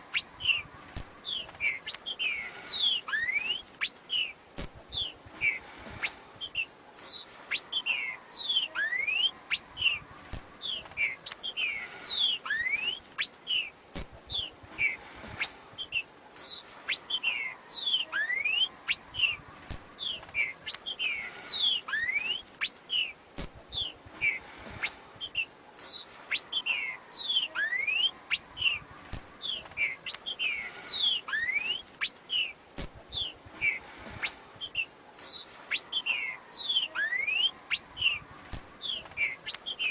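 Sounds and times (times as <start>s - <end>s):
bird chirping: 0.0s - 39.9s
rising whistled bird note: 0.1s - 4.3s, 10.6s - 13.7s, 14.3s - 19.4s, 20.0s - 23.1s, 29.5s - 32.5s, 33.2s - 38.2s.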